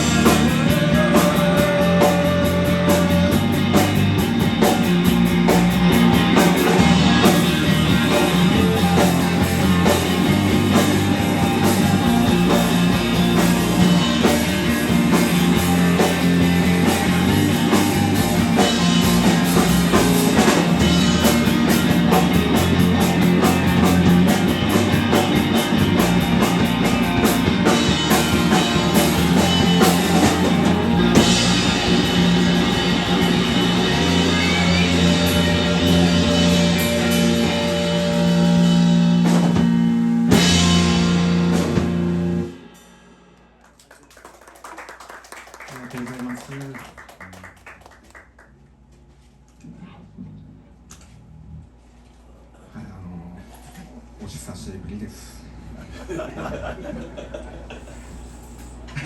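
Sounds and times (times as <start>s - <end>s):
electric guitar: 0.0s - 42.8s
rock band playing live: 0.0s - 43.4s
drums: 0.0s - 50.8s.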